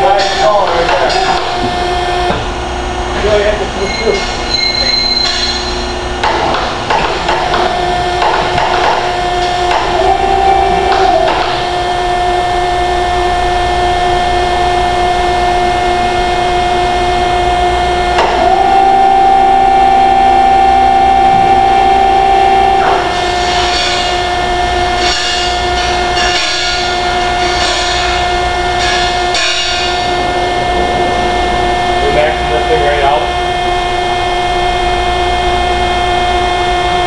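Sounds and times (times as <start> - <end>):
furnace machinery whining: 0.0 - 37.0
metal scraping and clanking: 22.9 - 24.3, 25.0 - 33.5.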